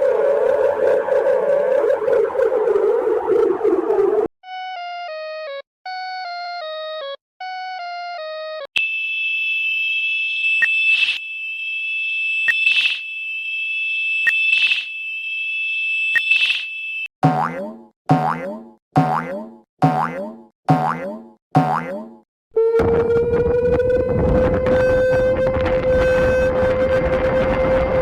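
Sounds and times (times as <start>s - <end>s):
high-pitched alarm tone: 8.8s - 17.1s
falling boing sound effect: 17.2s - 22.2s.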